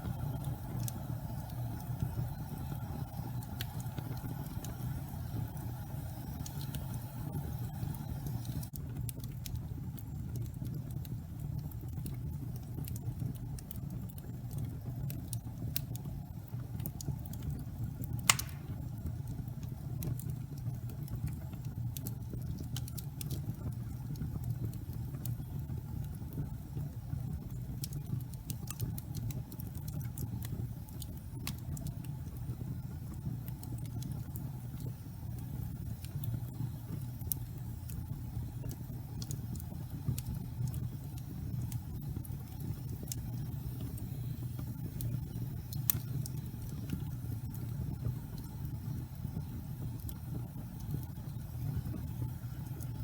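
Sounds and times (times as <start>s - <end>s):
fire crackling in a fireplace: 0.0s - 53.0s
low rumble of fire: 0.0s - 53.0s
loud pop from fire: 18.3s - 18.9s.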